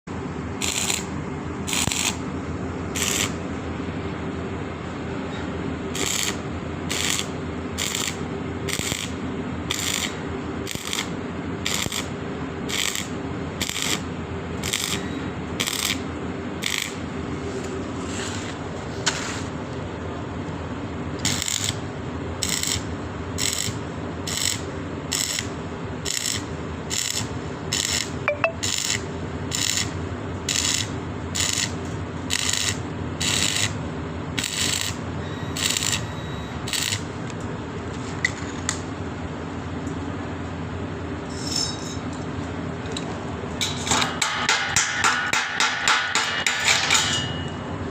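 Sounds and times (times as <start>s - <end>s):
pulsed welding arc hissing: 0.5s - 2.2s, 2.9s - 3.5s, 5.9s - 17.3s, 21.2s - 37.2s.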